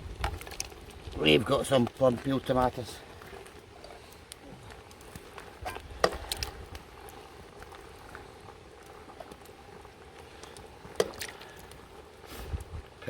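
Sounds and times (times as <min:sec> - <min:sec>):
chicken sizzling in a pan: 0:07.8 - 0:13.0.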